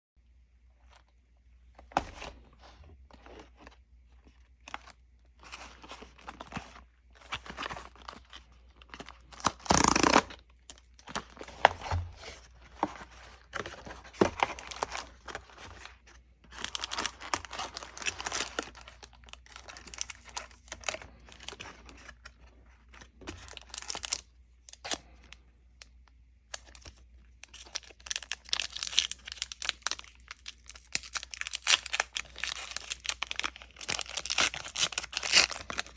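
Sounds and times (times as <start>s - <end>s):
packaging torn and crinkled: 7.3s - 11.7s, 27.4s - 35.9s.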